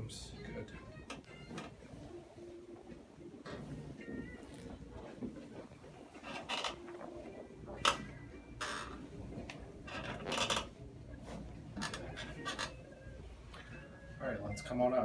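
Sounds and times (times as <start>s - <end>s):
rustling: 1.3s - 13.7s
spinal joint popping: 2.8s - 12.9s.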